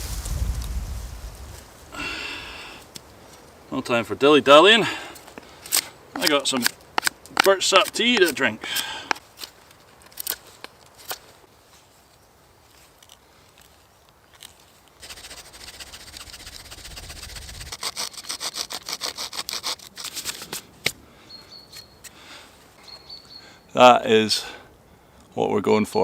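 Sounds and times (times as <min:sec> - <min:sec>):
hand rubbing wood: 0:15.0 - 0:20.6.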